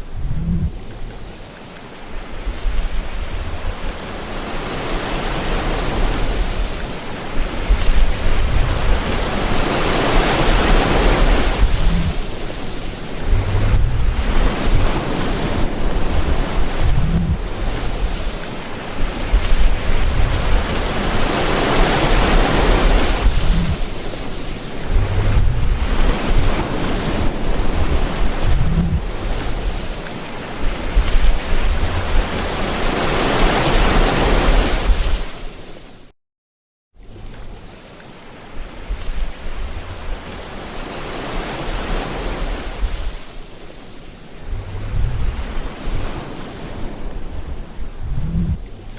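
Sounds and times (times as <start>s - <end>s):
low rumble: 0.0s - 1.3s, 7.6s - 9.6s, 10.6s - 12.4s, 13.1s - 21.4s, 22.1s - 24.0s, 24.6s - 30.0s, 30.6s - 32.6s, 44.4s - 46.1s, 47.0s - 48.9s
ocean waves breaking on shore: 0.0s - 36.1s, 37.0s - 48.9s.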